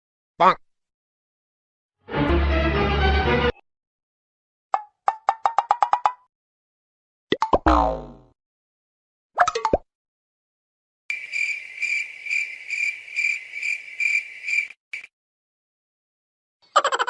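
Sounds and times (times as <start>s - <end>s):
springy sound effect: 7.4s - 8.3s
cricket chirping: 11.1s - 15.1s.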